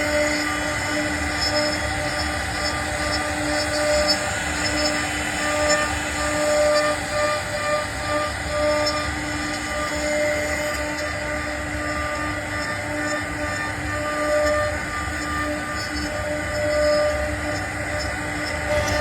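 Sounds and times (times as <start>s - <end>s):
router spindle whine: 0.0s - 19.0s
wood cutting noise: 0.0s - 19.0s.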